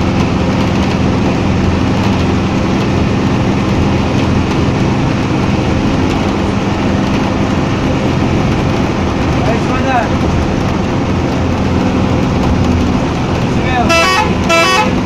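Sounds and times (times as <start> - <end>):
bus diesel engine humming: 0.0 - 15.0
road noise: 0.0 - 15.0.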